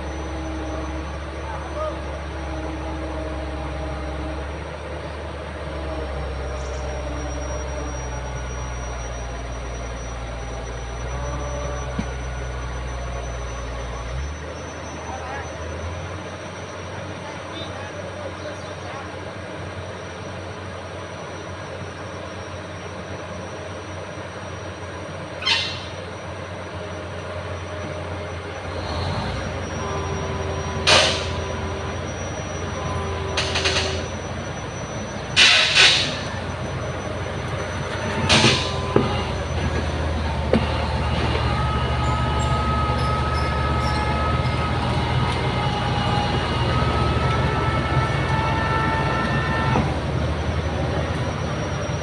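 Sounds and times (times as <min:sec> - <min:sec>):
heavy machinery diesel engine: 0:00.0 - 0:52.0
high-pitched squealing: 0:27.8 - 0:52.0.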